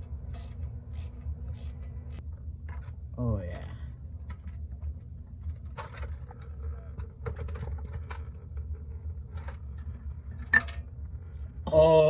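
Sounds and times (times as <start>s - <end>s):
tools and metal parts clicking: 0.0s - 3.0s
low hum: 0.0s - 12.0s.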